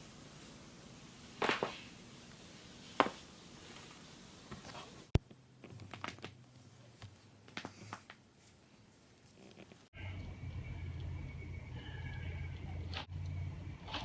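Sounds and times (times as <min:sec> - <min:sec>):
quiet joint pops and clicks: 0:05.1 - 0:08.2.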